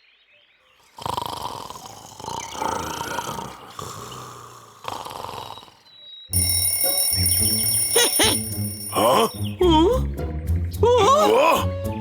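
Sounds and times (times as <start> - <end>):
cartoon bear snoring: 0.9 - 5.9.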